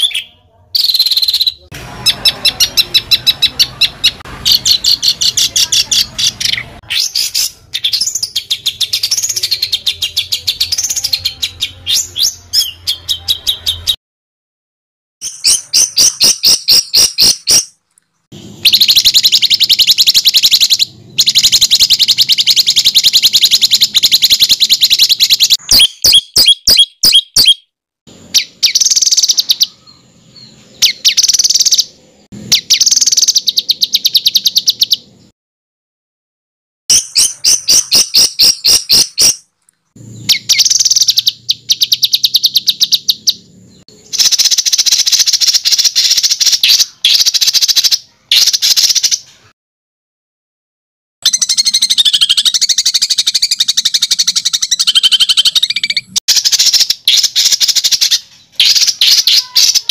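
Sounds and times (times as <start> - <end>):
songbird harsh rapid trills: 18.5 - 30.0, 36.9 - 39.5, 40.1 - 49.5, 51.2 - 59.9.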